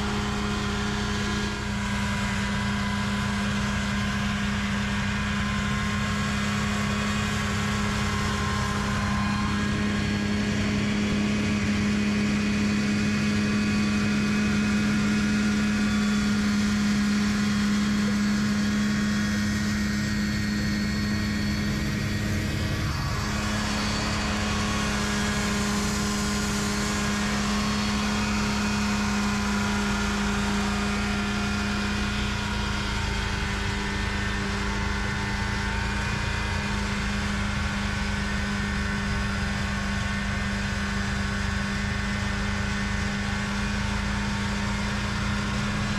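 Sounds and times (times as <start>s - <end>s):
engines running steadily: 0.0s - 45.9s.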